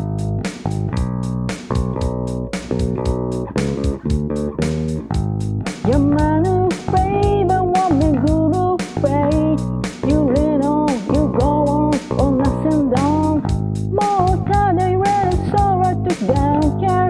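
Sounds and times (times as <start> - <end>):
electric bass guitar: 0.0 - 17.0
shaker beat: 0.0 - 17.0
person singing: 5.8 - 17.0.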